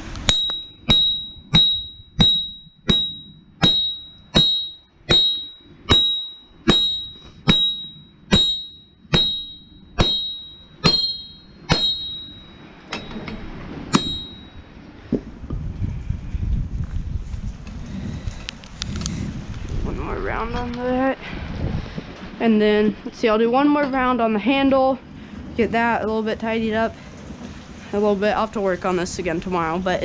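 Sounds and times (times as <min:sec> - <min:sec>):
hammer ringing on anvil: 0:00.3 - 0:14.6
wind noise on microphone: 0:13.3 - 0:30.0.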